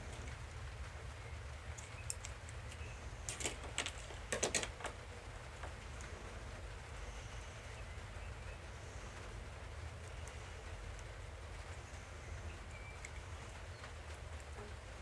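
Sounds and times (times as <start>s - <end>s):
steady low hum: 0.0s - 15.0s
plastic toy parts clicking: 3.3s - 5.0s.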